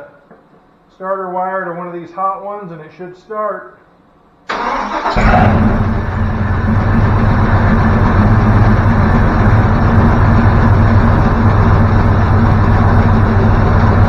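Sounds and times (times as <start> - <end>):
car engine running: 5.0 - 14.0.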